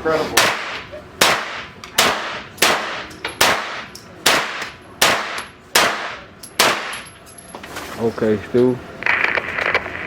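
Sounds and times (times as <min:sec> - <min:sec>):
gunshots with ringing echo: 0:00.4 - 0:07.1.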